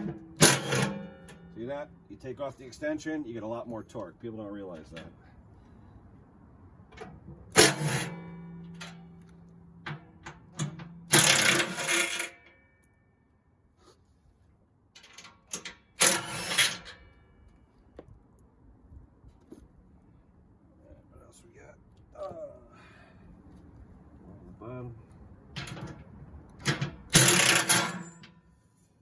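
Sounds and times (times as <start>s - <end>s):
impact wrench bursts: 0.0s - 1.6s, 7.5s - 8.9s, 11.0s - 12.4s, 16.0s - 16.8s, 27.0s - 28.2s.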